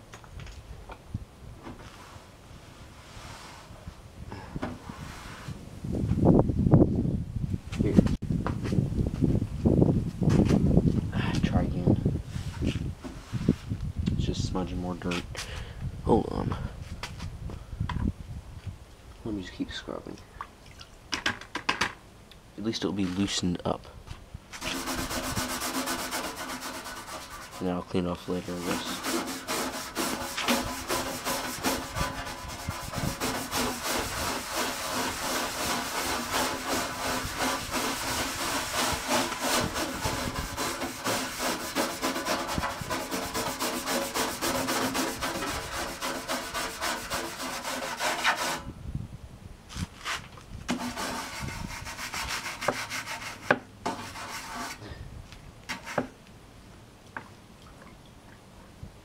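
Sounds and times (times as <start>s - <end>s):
scrubbing computer case: 24.6s - 27.8s, 28.4s - 48.6s.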